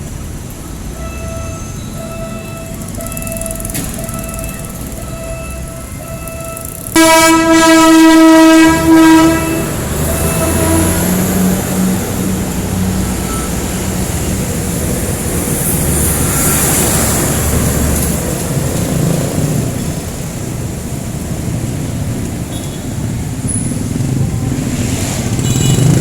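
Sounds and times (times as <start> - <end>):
train rumbling past: 0.0 - 26.0
train horn: 4.5 - 11.9.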